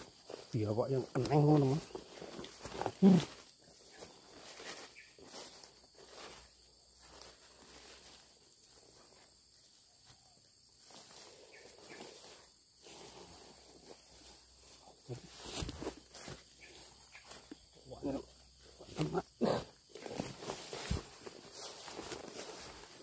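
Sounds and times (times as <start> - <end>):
footsteps through vegetation: 0.0 - 23.0.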